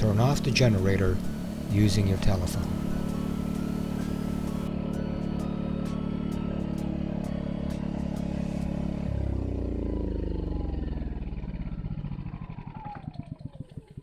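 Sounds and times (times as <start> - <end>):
generator engine winding down: 0.0 - 4.8, 8.0 - 14.0.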